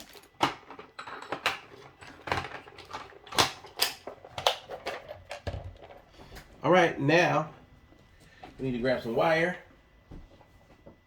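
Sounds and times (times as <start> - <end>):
tools clattering on a workbench: 0.0 - 6.5.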